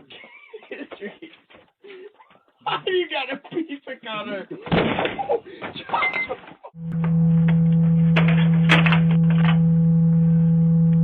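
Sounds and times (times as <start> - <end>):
loud steady low hum: 6.8 - 11.0.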